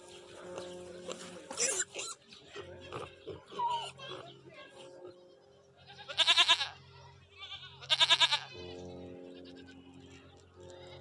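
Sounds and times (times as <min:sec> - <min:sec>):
goat bleating: 0:05.8 - 0:09.9, 0:10.7 - 0:11.0.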